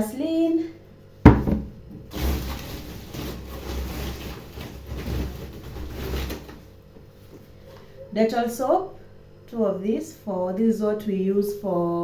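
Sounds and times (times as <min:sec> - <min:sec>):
packaging rustling: 0:02.1 - 0:06.7.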